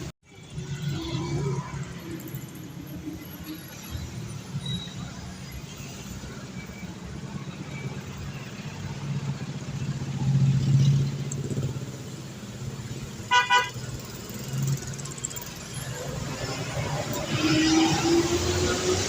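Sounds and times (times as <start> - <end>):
bus engine rumbling: 0.0 - 19.0
bus horn blast: 13.3 - 13.8.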